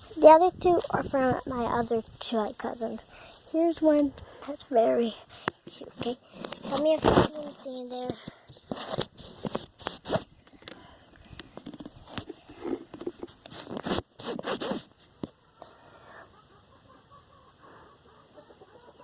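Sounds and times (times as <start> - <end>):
rustling: 0.0 - 15.4
rasping scrapes and clicks: 5.4 - 15.3.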